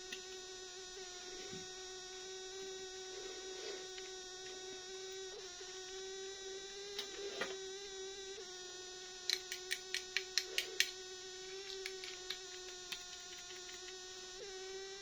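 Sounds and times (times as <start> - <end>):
steady pitched hum: 0.0 - 15.0
plastic packaging clicks: 9.3 - 10.9.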